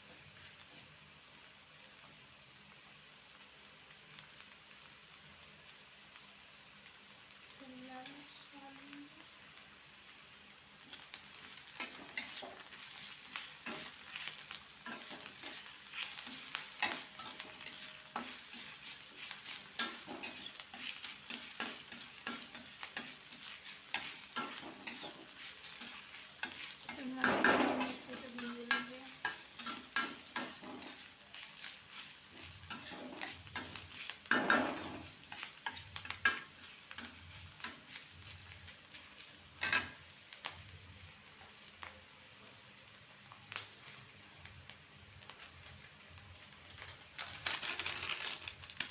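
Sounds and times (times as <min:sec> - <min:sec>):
vegetables sizzling in a pan: 0:00.0 - 0:48.9
spatula scraping and tapping pan: 0:11.8 - 0:38.4, 0:39.6 - 0:40.0.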